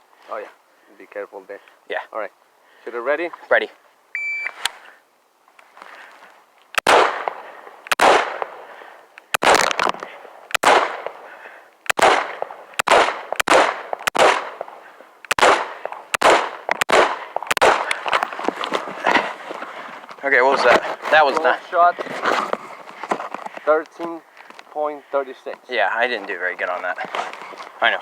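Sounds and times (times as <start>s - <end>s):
shot timer beep: 4.2s - 4.6s
gunshots: 6.8s - 8.7s, 9.3s - 11.2s, 11.9s - 18.2s.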